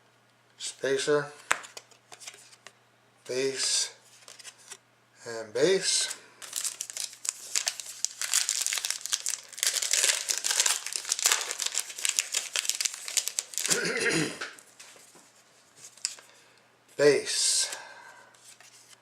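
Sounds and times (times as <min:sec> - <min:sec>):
wrapper crinkling and tearing: 0:06.4 - 0:13.8.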